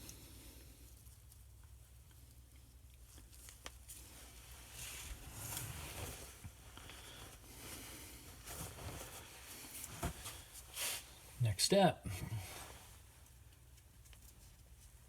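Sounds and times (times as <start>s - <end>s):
soft rubbing noises: 3.8s - 11.4s, 12.3s - 13.4s.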